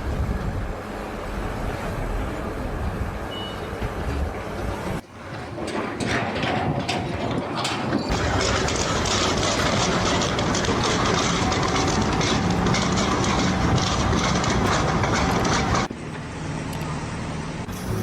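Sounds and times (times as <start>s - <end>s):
heavy machinery clattering: 3.7s - 16.4s.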